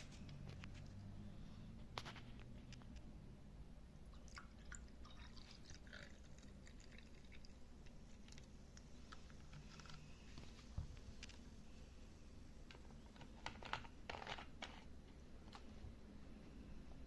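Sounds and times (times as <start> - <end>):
low room hum: 0.0 - 17.0
small clicks and crackles: 7.8 - 11.5, 12.7 - 15.7.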